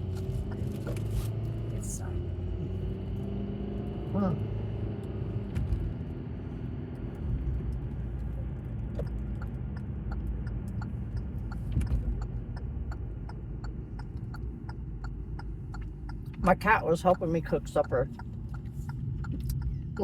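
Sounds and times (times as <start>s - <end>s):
turn signal clicking: 0.0s - 1.7s, 6.8s - 20.0s
engine and road rumble: 0.0s - 20.0s.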